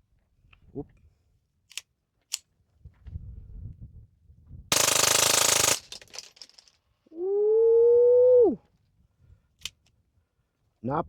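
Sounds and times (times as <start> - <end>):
suppressed gunshots: 4.7 - 6.3.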